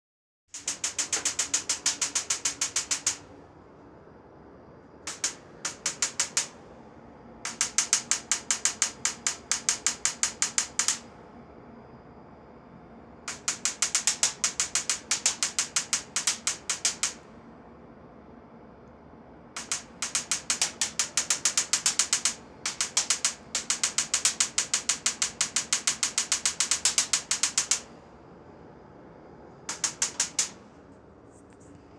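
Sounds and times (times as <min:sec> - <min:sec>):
steady hum: 0:00.5 - 0:31.9
furnace clicking rapidly: 0:00.6 - 0:03.3, 0:05.1 - 0:06.6, 0:07.5 - 0:11.0, 0:13.3 - 0:17.2, 0:19.6 - 0:27.9, 0:29.7 - 0:30.6.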